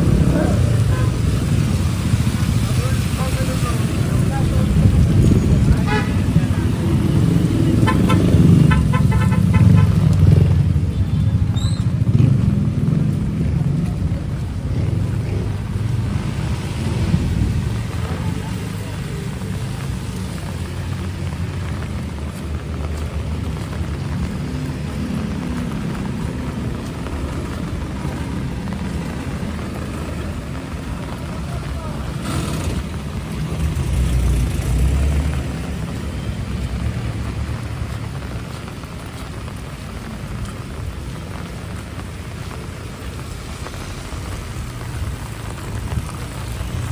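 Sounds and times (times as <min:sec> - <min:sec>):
wind buffeting microphone: 0:00.0 - 0:19.0
heavy rain: 0:00.0 - 0:46.9
traffic: 0:00.0 - 0:46.9
wind rumbling: 0:00.0 - 0:46.9.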